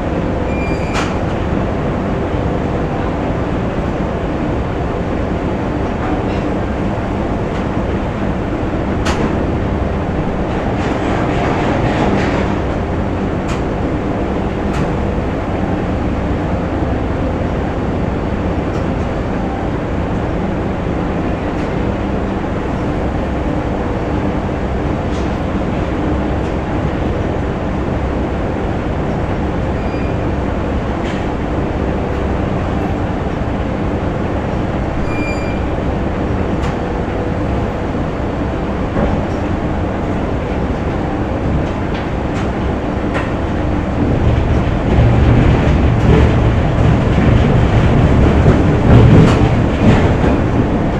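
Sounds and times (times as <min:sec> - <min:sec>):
factory machinery rumbling: 0:00.0 - 0:50.9.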